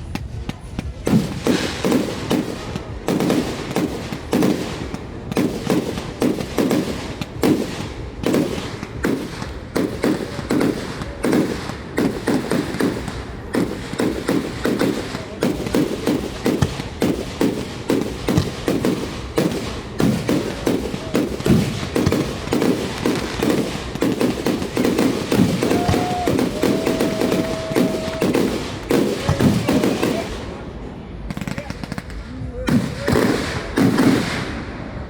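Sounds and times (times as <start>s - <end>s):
fireworks bangs: 0.0s - 35.0s.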